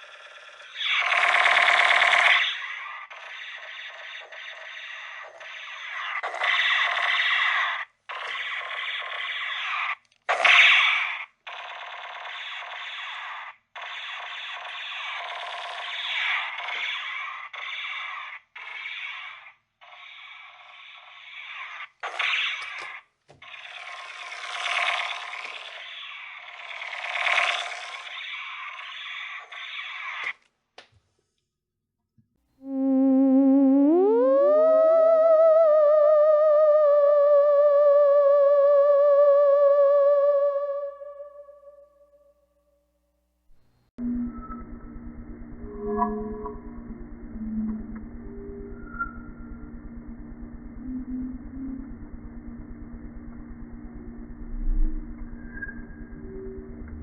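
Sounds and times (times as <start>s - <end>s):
synthesized sci-fi ufo effects: 32.6s - 42.3s, 44.0s - 57.0s.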